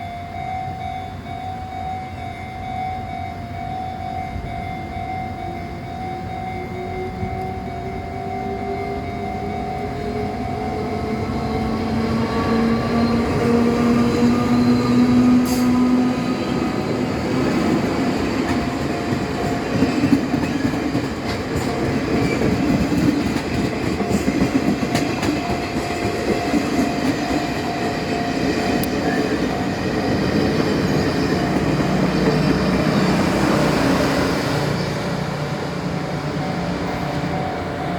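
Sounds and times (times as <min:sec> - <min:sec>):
train rumbling on rails: 0:00.0 - 0:37.9
wheels clicking on track: 0:11.0 - 0:33.2.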